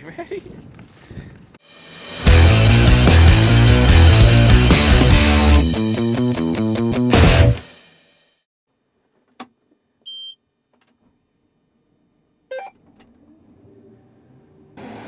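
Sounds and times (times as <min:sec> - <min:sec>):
music: 0:01.7 - 0:08.1.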